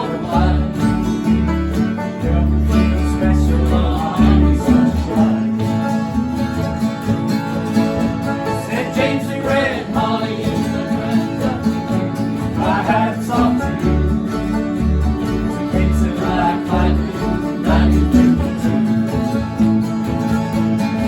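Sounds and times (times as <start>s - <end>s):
person singing: 0.0s - 1.0s, 2.2s - 5.8s, 15.5s - 19.2s
banjo: 0.0s - 21.0s
plucked acoustic guitar: 0.0s - 21.0s.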